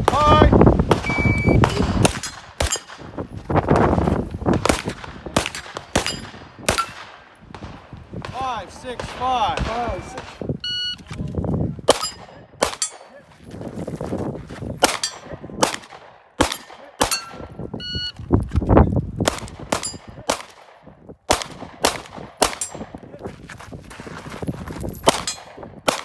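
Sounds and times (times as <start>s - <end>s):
gunshots: 0.0s - 10.5s, 11.9s - 13.2s, 14.8s - 17.6s, 19.2s - 23.0s, 25.0s - 26.0s
steel targets clanging: 11.9s - 13.1s, 16.5s - 17.4s.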